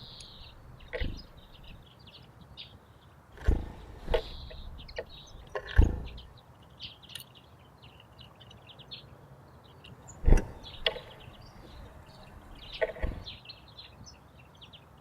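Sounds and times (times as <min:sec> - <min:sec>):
small birds chirping: 0:00.0 - 0:15.0
loud knocks near microphone: 0:05.7 - 0:06.2.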